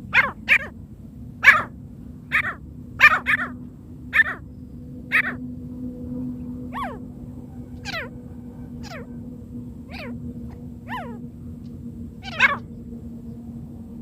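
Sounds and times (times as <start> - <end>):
steady low hum: 0.0 - 14.0
bird calling falling notes: 2.3 - 5.4, 6.3 - 12.9.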